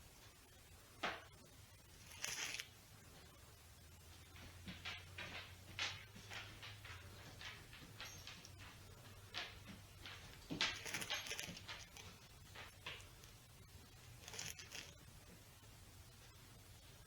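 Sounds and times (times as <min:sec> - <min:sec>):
kitchen scrapes and rustles: 0:04.5 - 0:13.4.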